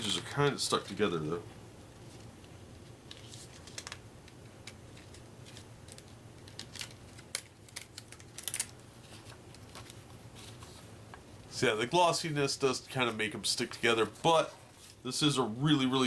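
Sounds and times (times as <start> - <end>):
glossy pages crackling: 2.2 - 4.0, 4.6 - 10.9.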